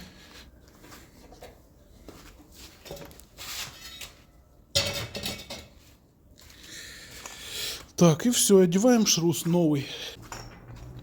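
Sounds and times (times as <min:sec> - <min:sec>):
metal tools scraping and rubbing: 0:02.7 - 0:04.3.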